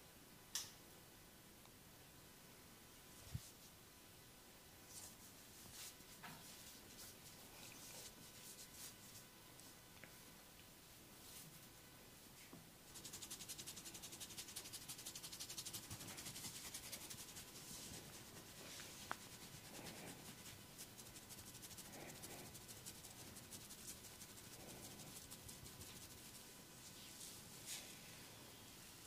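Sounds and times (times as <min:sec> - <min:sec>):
hands rubbing skin: 0:12.9 - 0:27.3.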